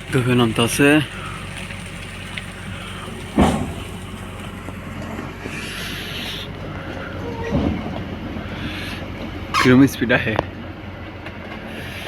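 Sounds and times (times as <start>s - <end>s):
excavator diesel engine running: 0.0s - 12.0s
loud thump: 3.4s - 3.9s.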